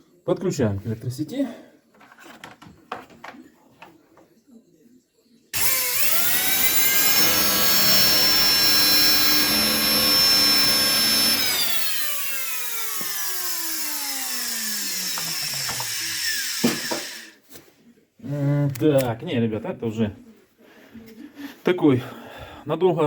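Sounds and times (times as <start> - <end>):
vacuum motor whining: 5.6 - 17.3.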